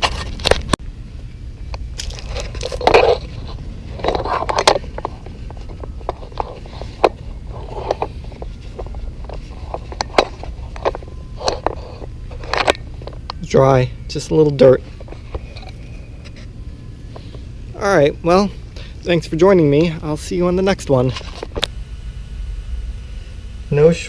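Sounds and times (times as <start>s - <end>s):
steady low rumble: 0.0s - 24.0s
hands scraping and crunching: 1.8s - 13.7s.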